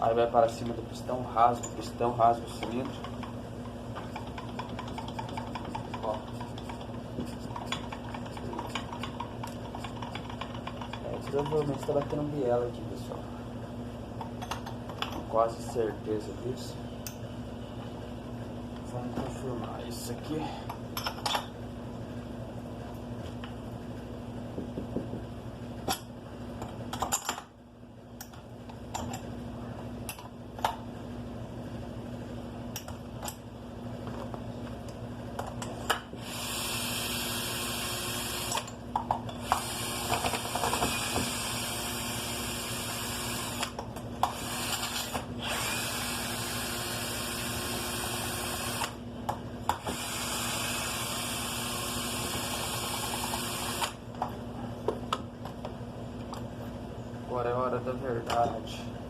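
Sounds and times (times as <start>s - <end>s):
handheld power tool running: 36.2s - 38.8s, 39.4s - 49.0s, 49.7s - 54.0s.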